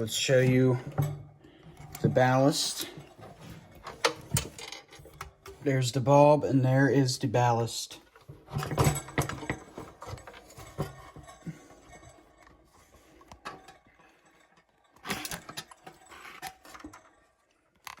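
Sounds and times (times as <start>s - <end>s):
handling clicks and rattles: 8.1s - 18.0s.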